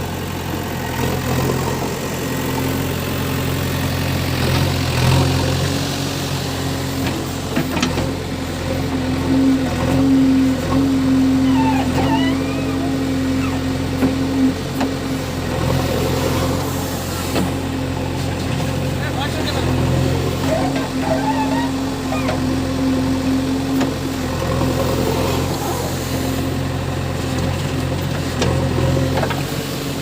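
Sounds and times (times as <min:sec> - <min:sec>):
diesel engine running: 0:00.0 - 0:30.0
engine whine: 0:00.0 - 0:30.0
wavering squeal: 0:11.2 - 0:13.8, 0:20.4 - 0:22.5.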